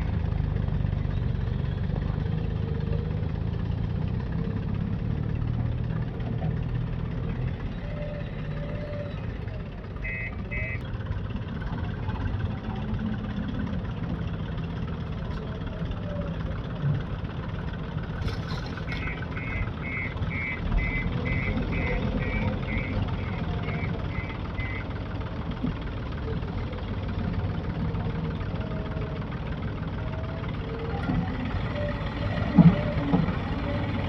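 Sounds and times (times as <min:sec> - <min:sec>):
diesel engine running: 0:00.0 - 0:34.0
reversing alarm beeping: 0:07.8 - 0:10.8, 0:18.9 - 0:24.9.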